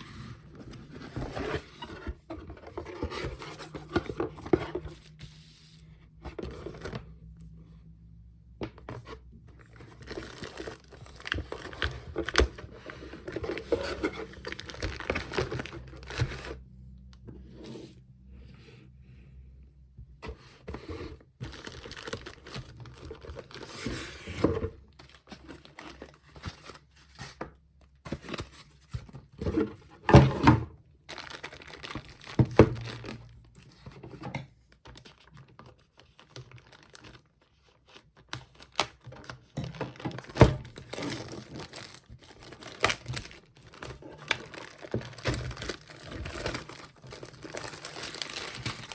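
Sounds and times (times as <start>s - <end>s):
packaging crinkling and tearing: 9.6s - 16.5s, 21.4s - 23.9s, 31.1s - 33.5s, 34.9s - 48.9s.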